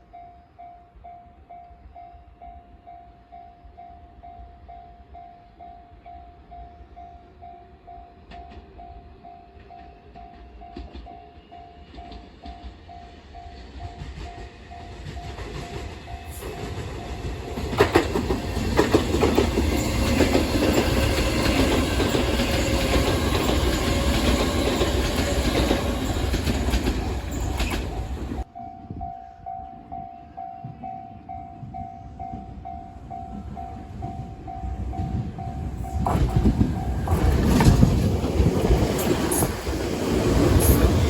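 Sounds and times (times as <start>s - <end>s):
train clattering over rail joints: 13.7s - 28.5s, 34.8s - 41.0s.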